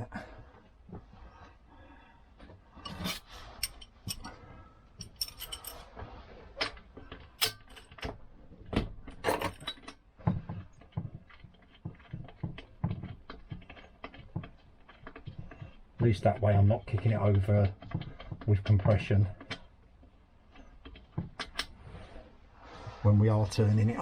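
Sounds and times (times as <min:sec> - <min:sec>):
sockets and tools clinking: 0:02.8 - 0:04.4, 0:05.0 - 0:05.9, 0:07.4 - 0:08.1, 0:09.2 - 0:10.0.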